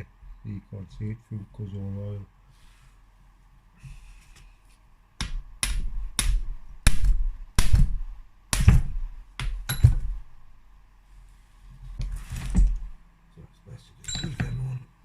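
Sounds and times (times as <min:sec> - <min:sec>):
hammer striking metal: 0:05.2 - 0:10.1.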